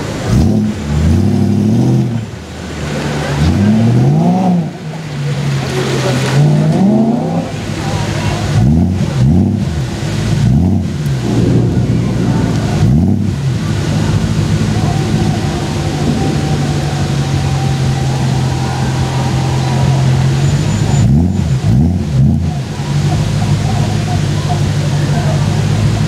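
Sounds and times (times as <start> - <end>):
car engine revving: 0.0 - 26.0.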